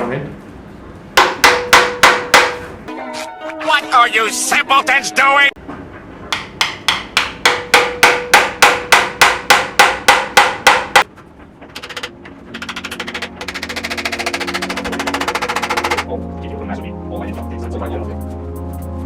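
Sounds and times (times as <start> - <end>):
hammer striking metal: 1.2 - 2.7, 6.3 - 11.1, 11.8 - 16.1
fast machine-like rattle: 11.7 - 16.1.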